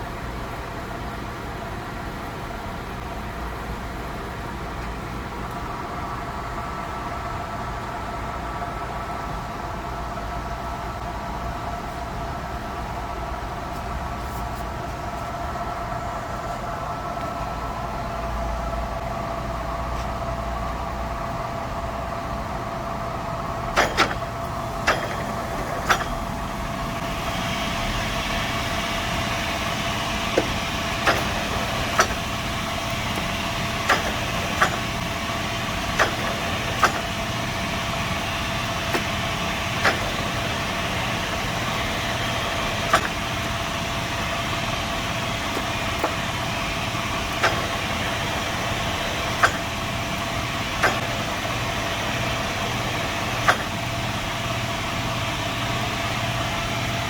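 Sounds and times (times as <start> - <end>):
lathe gearing whine: 0.0 - 57.0
motor hum: 3.0 - 57.0
sharp clicks: 23.8 - 26.3, 29.6 - 37.3, 38.8 - 43.6, 47.1 - 53.9.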